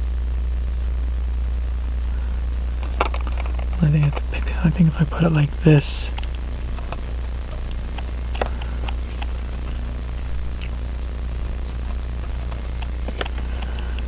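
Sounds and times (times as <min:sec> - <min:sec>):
low electrical hum: 0:00.0 - 0:14.0
small tools clicking: 0:11.7 - 0:14.0.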